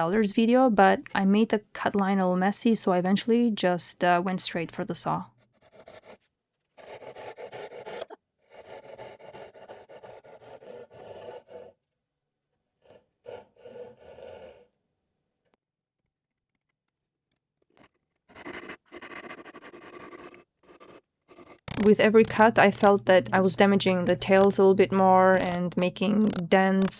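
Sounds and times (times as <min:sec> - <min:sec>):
hand saw cutting wood: 0:06.8 - 0:11.7, 0:12.8 - 0:14.6, 0:17.8 - 0:23.0, 0:24.0 - 0:26.9.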